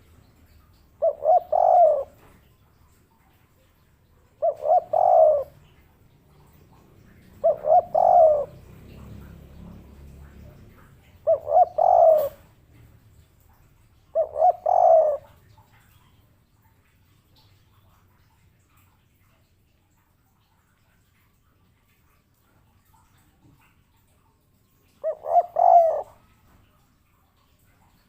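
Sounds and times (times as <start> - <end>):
dove cooing: 0.5 - 2.4, 4.3 - 12.6, 14.0 - 15.8, 24.9 - 26.4.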